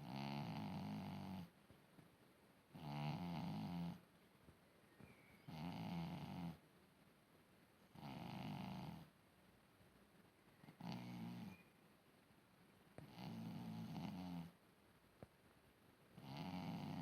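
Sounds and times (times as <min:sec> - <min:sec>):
pet snoring loudly: 0:00.0 - 0:01.5, 0:02.7 - 0:04.0, 0:05.5 - 0:06.6, 0:07.9 - 0:09.1, 0:10.8 - 0:11.6, 0:13.0 - 0:14.6, 0:16.2 - 0:17.0.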